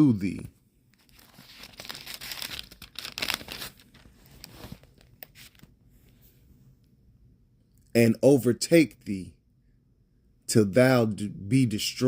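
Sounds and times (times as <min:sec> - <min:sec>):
paper rustling and crinkling: 0:00.9 - 0:05.8.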